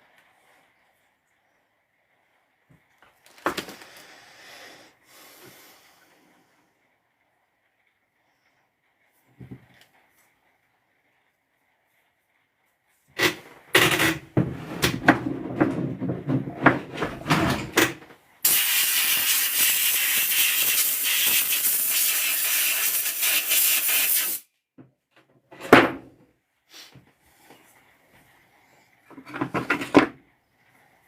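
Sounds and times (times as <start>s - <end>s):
pressurised jet hissing: 18.4s - 24.4s.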